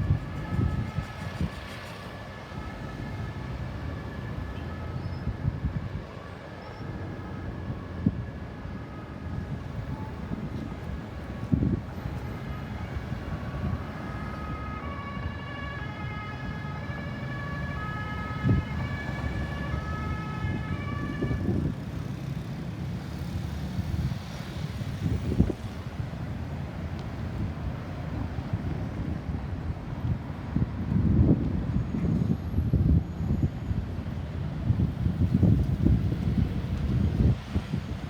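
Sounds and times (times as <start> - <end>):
ambulance siren: 0.0 - 22.5
road traffic rumble: 0.0 - 38.0.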